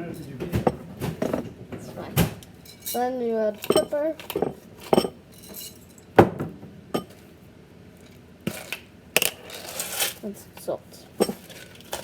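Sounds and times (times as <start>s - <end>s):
kitchenware clinking: 0.4s - 1.5s, 2.6s - 7.2s, 11.2s - 12.0s.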